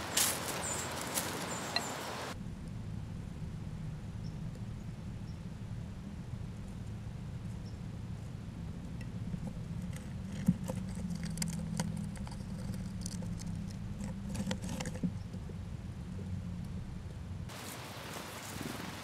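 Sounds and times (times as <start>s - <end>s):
steady low hum: 0.0s - 17.5s
rodent gnawing and scrabbling: 9.2s - 15.6s.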